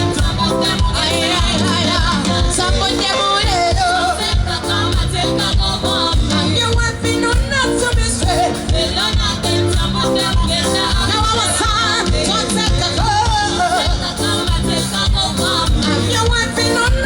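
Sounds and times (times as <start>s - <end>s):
live salsa-like music: 0.0s - 17.0s.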